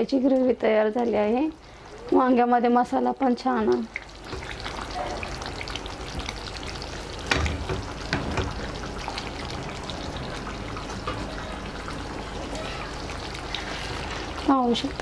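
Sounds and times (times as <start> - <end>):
thick gravy bubbling in a pan: 0.0 - 15.0
knocks: 7.2 - 8.9.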